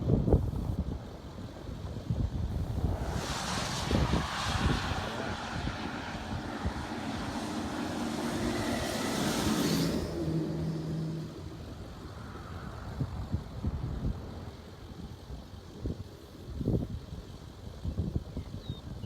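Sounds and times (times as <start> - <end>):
military convoy passing: 4.9 - 12.0.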